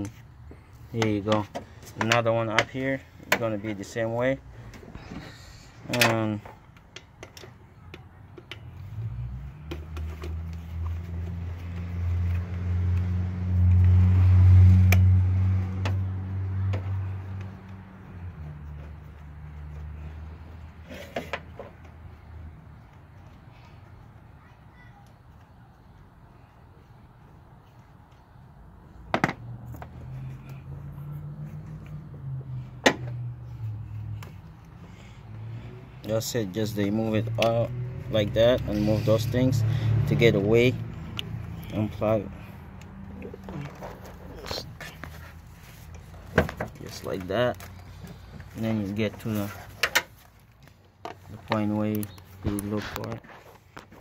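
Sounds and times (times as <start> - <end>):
low engine hum: 8.6 - 20.8, 28.4 - 49.2.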